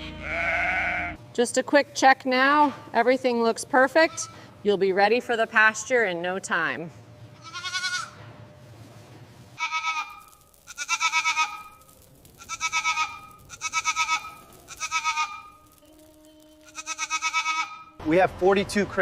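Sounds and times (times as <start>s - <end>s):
goat bleating: 0.0s - 1.2s, 7.4s - 8.2s, 9.6s - 11.8s, 12.4s - 17.9s.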